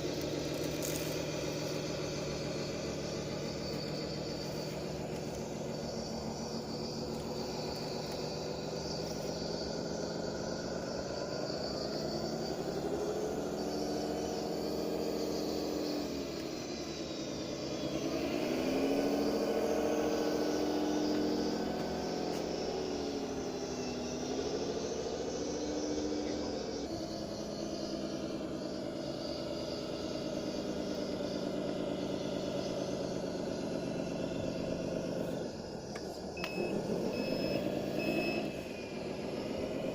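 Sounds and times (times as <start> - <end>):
model bulldozer motor: 0.0 - 39.9.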